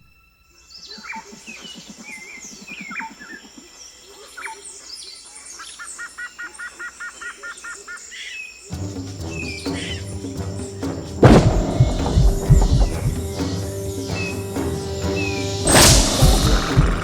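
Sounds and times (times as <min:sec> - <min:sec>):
birds calling and chirping: 0:00.6 - 0:17.0
music: 0:08.7 - 0:17.0
rapid low croaking pulse: 0:08.8 - 0:17.0
quick two-note chirps: 0:11.2 - 0:17.0.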